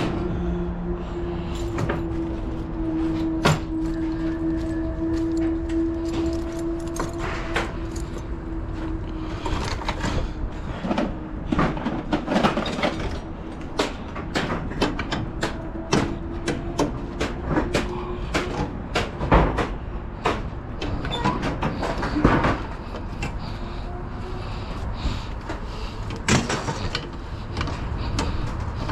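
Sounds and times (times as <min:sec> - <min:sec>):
metallic clanks and rattles: 0:09.4 - 0:23.5, 0:26.0 - 0:28.9.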